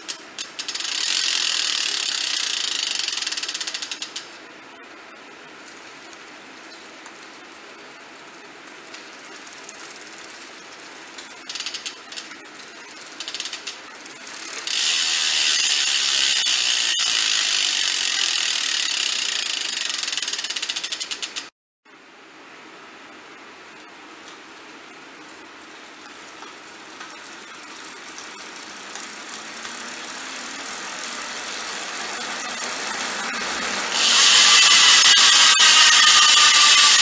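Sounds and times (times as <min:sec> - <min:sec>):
bicycle hub ratcheting clicks: 0:00.0 - 0:04.3, 0:08.9 - 0:21.5, 0:26.4 - 0:37.0.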